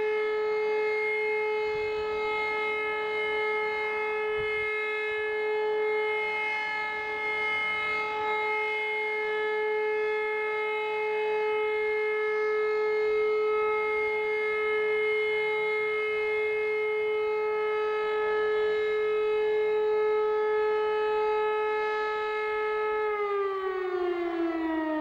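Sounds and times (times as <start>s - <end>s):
siren steady tone: 0.0s - 25.0s.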